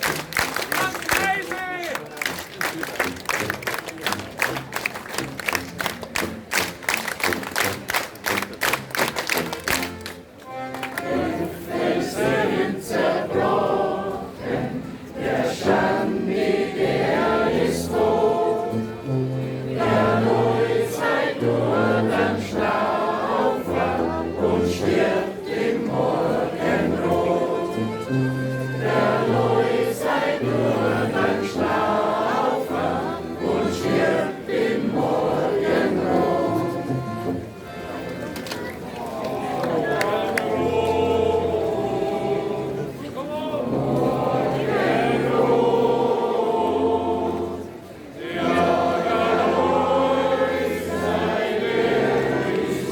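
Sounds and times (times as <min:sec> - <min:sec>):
hands clapping: 0:00.0 - 0:11.2, 0:38.0 - 0:41.0
instrumental accompaniment: 0:02.0 - 0:43.0
group of voices singing: 0:10.9 - 0:37.6, 0:39.0 - 0:52.9.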